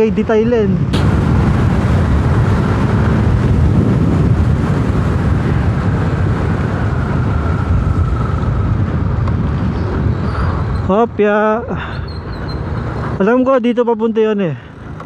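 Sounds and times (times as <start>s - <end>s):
wind buffeting microphone: 0.6s - 11.2s
scooter engine and road noise: 1.0s - 13.8s, 14.6s - 15.0s.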